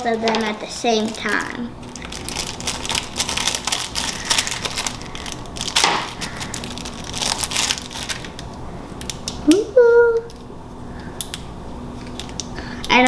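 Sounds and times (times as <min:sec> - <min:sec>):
plastic packaging crinkling: 0:00.0 - 0:09.6, 0:12.0 - 0:12.7.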